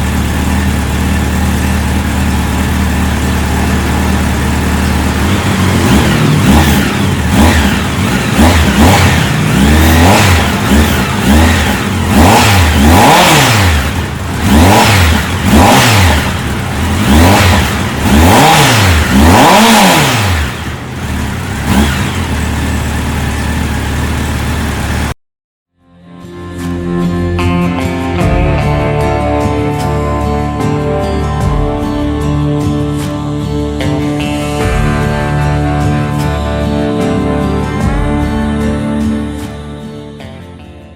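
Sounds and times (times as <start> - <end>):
motorcycle engine idling: 0.0 - 25.2
motorcycle engine revving: 0.0 - 25.2, 27.7 - 40.3.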